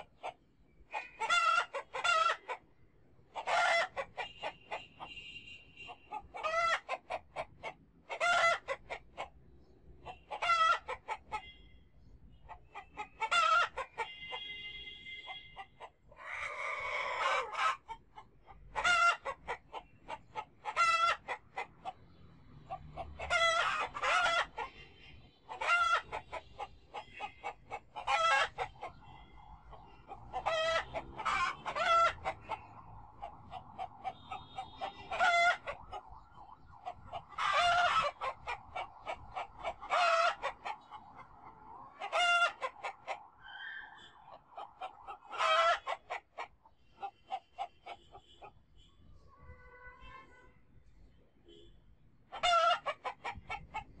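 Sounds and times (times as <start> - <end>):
chorus of birds: 19.3 - 48.5
fowl calling: 25.5 - 48.5.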